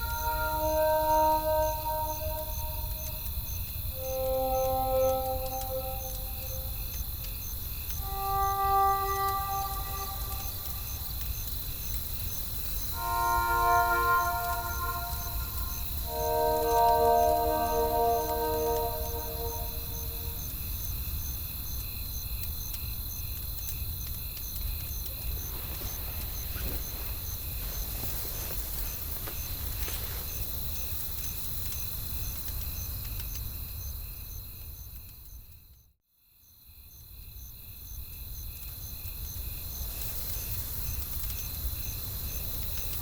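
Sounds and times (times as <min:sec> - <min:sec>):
crickets chirping: 0:00.0 - 0:20.8.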